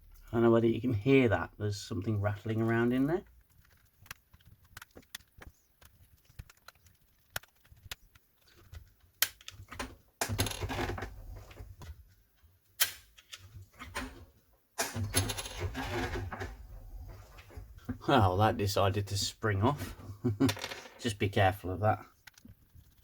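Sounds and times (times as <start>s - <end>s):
loose piece rattling in plastic: 3.2s - 9.8s
sharp plastic clicks: 3.2s - 10.4s.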